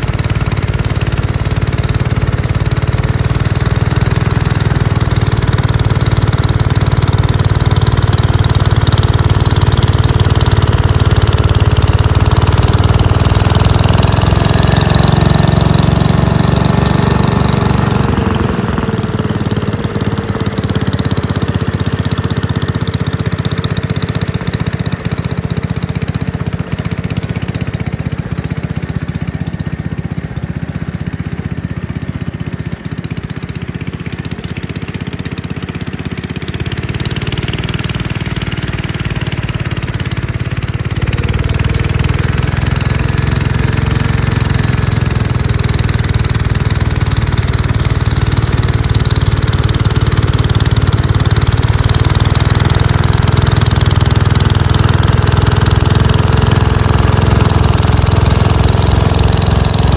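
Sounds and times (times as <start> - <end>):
tractor engine running: 0.0 - 59.9.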